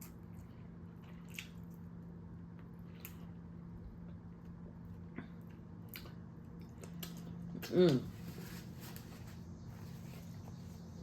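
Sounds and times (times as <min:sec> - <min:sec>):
person chewing food: 0:00.0 - 0:08.2
faint steady hum: 0:00.0 - 0:11.0.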